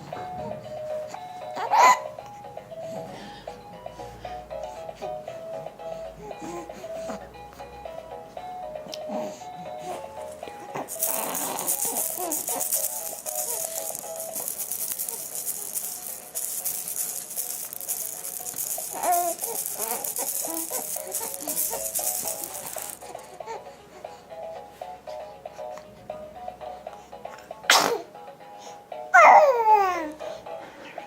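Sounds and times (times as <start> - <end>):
simple stepping melody: 0.0 - 27.2
rattle shaking: 10.2 - 23.5.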